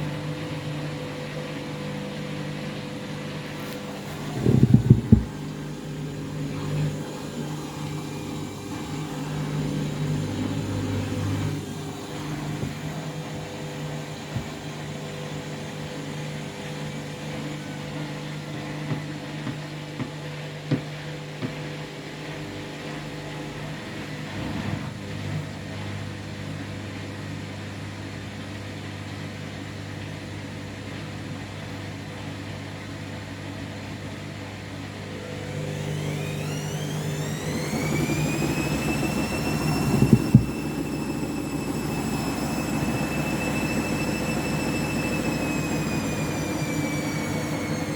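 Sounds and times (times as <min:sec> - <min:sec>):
motor whine: 0:00.0 - 0:28.0, 0:34.5 - 0:47.9
washing machine drum humming: 0:00.0 - 0:31.9, 0:33.2 - 0:47.9
drum knocking: 0:04.4 - 0:05.5.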